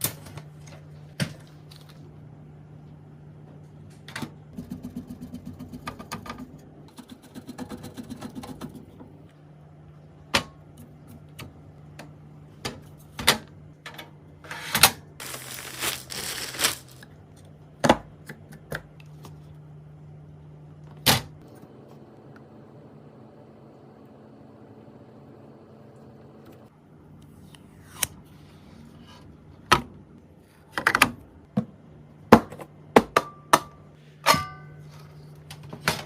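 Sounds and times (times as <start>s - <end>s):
scraping or rustling: 15.2s - 17.0s.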